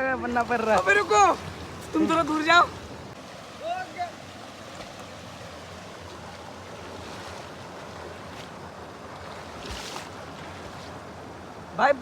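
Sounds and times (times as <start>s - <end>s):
waterfall rushing: 0.3s - 4.7s.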